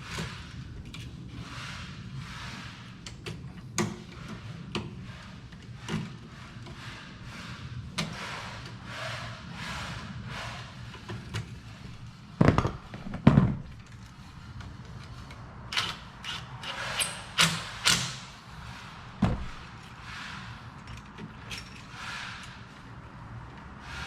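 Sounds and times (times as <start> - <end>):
loud thumps: 12.4 - 13.7, 19.2 - 19.7.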